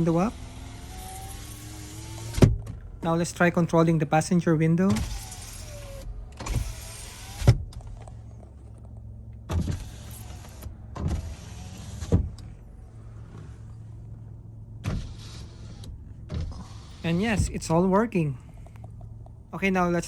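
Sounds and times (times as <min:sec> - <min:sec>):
power window motor running: 0:00.0 - 0:03.0, 0:04.9 - 0:19.2
low engine idle: 0:15.9 - 0:20.0.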